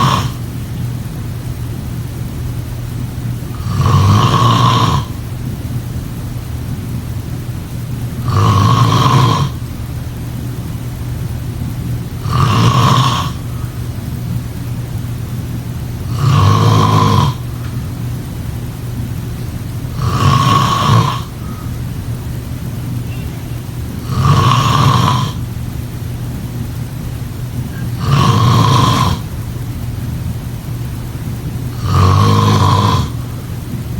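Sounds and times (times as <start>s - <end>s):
person snoring: 0.0s - 0.6s, 3.5s - 5.2s, 8.2s - 9.6s, 12.2s - 13.8s, 16.0s - 17.6s, 19.9s - 21.8s, 23.9s - 25.5s, 27.6s - 29.4s, 31.7s - 33.6s
steady low hum: 0.0s - 33.9s.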